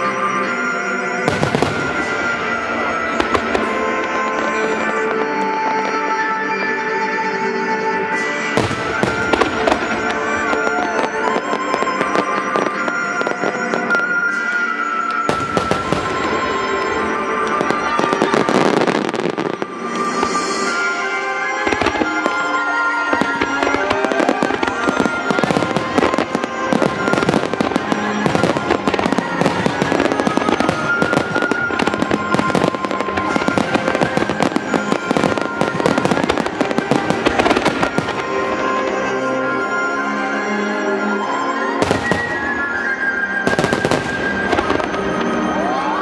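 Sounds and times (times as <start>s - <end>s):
music with sustained tones: 0.0s - 46.0s
fireworks shells bursting: 8.5s - 39.3s.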